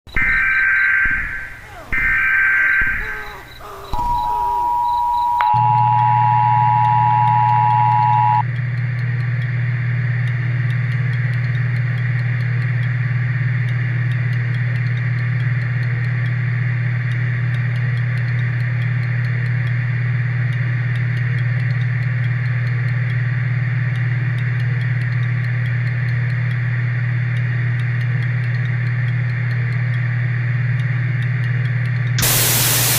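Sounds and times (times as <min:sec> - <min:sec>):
two-tone attention signal: 0:00.2 - 0:08.4
low hum with hiss: 0:00.2 - 0:32.9.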